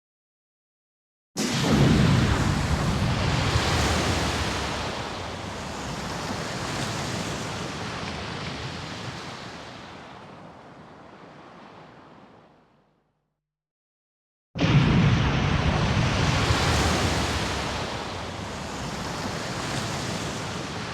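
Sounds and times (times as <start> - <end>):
rushing tail of heavy boom: 1.4 - 5.6, 14.6 - 19.6.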